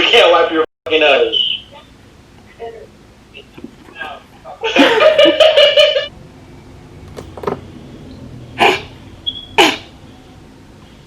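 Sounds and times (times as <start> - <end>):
person sniffing: 8.6 - 8.9, 9.6 - 10.0.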